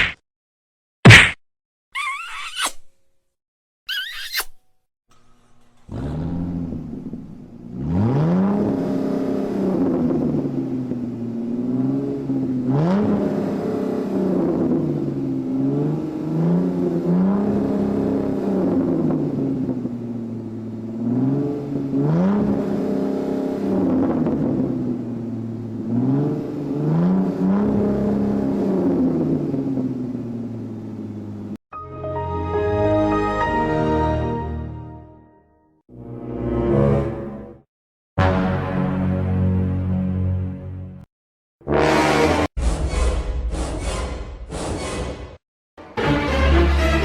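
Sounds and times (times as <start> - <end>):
car engine revving: 5.8 - 31.6, 41.6 - 42.6.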